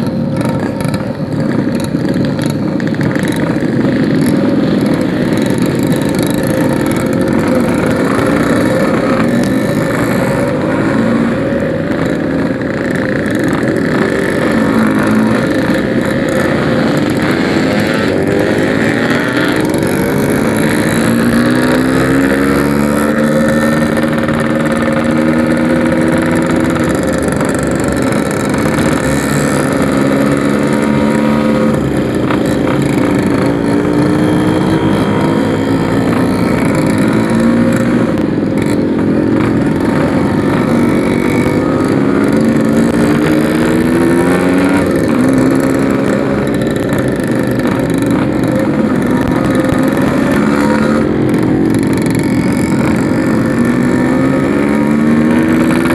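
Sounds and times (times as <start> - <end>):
two-stroke motorcycle engine revving: 0.0 - 55.9.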